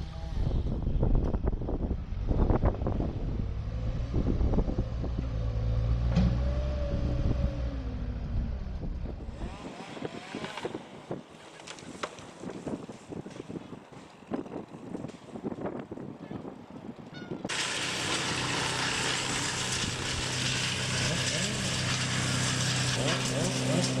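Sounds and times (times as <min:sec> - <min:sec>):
large engine rumbling: 0:00.0 - 0:09.6, 0:16.7 - 0:24.0
outdoor noise: 0:00.0 - 0:24.0.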